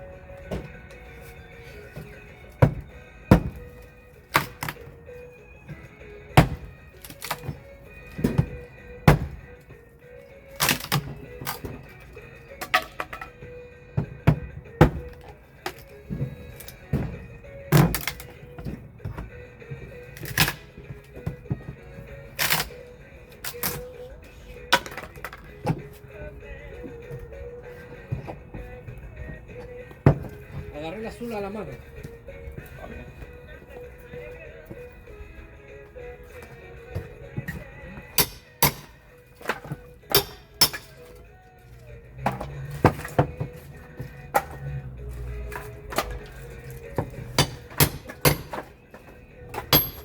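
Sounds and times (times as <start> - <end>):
wood cracking under blows: 1.9 - 5.0, 5.8 - 9.8, 10.4 - 19.4
pry bar and hammer on wooden door: 6.3 - 7.6, 8.2 - 9.5, 38.2 - 39.0, 47.0 - 48.7.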